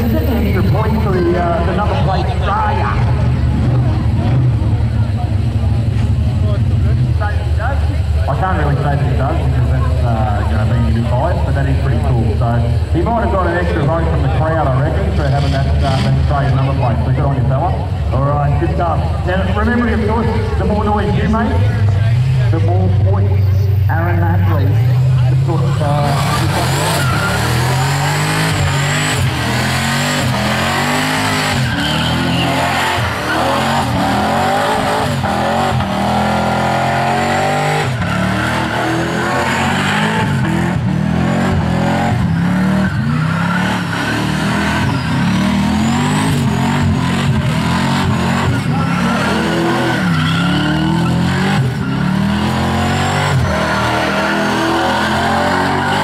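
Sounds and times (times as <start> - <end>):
car engine revving: 0.0 - 56.0
tyres squealing: 26.0 - 56.0.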